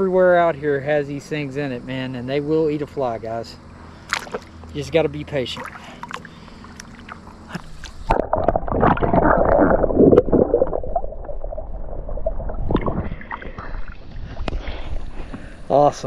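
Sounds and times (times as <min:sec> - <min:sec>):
water splashing and sloshing: 0:03.9 - 0:15.4.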